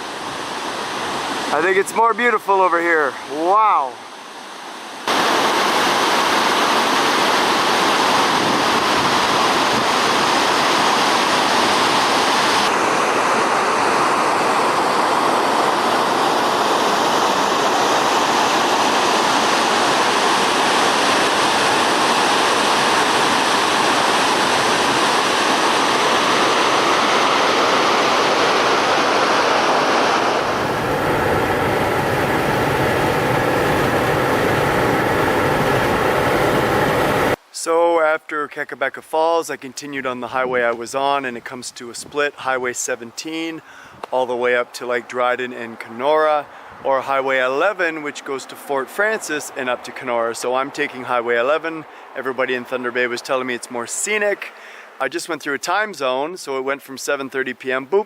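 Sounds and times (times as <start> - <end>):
waterfall roar: 0.0 - 37.5.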